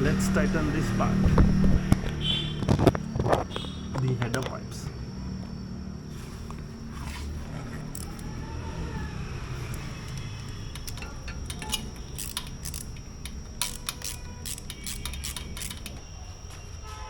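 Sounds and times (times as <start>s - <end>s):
hand tools clicking on metal: 7.9s - 8.4s, 9.7s - 16.2s.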